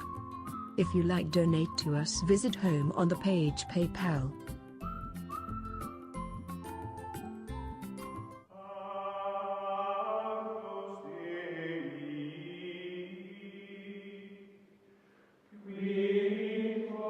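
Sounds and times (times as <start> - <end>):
chant-like voices holding tones: 8.5 - 14.6, 15.6 - 17.0.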